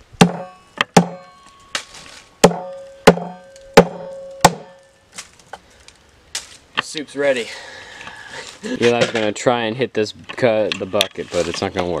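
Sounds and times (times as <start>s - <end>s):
sword hacking tree root: 0.2s - 5.3s
blade ringing: 0.3s - 5.0s.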